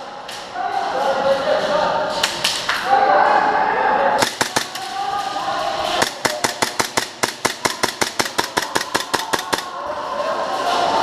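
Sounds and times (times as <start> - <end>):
airsoft gun rapid firing: 4.2 - 5.0, 6.0 - 9.8.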